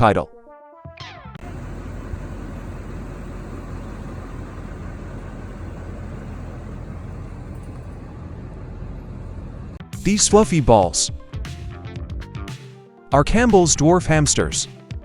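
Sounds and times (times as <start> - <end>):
low rumbling noise: 1.4 - 9.8.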